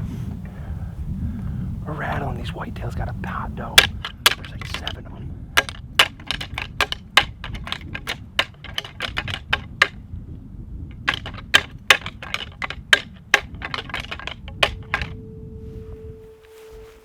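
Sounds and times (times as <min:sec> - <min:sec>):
antlers clacking and grinding: 0:03.6 - 0:10.0, 0:10.9 - 0:15.2.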